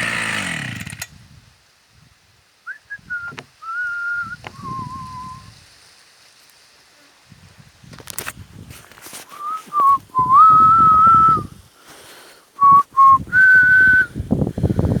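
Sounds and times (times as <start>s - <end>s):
person whistling: 2.7s - 5.5s, 9.3s - 11.5s, 12.6s - 14.1s.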